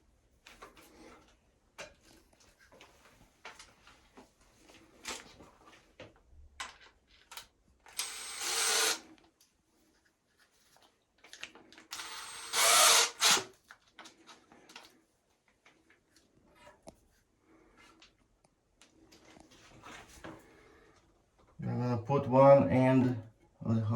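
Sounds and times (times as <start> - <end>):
power drill running: 8.0 - 9.0, 11.9 - 13.5.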